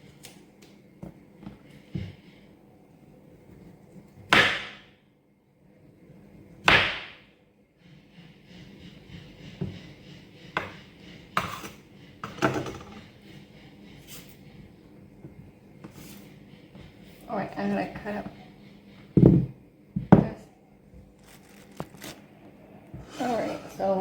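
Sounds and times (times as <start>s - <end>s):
kitchen items knocking on counter: 12.2s - 13.0s, 19.2s - 20.4s.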